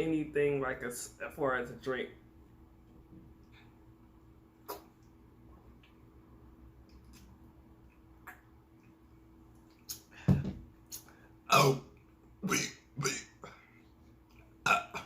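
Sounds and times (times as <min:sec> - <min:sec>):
person burping: 0:11.5 - 0:13.6, 0:14.6 - 0:15.0.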